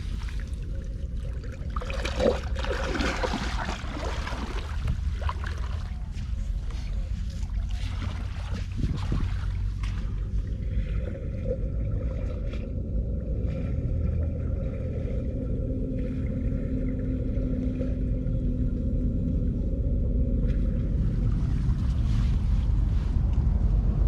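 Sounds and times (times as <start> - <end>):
steady hum: 0.0 - 24.0
steady low rumble: 0.0 - 24.0.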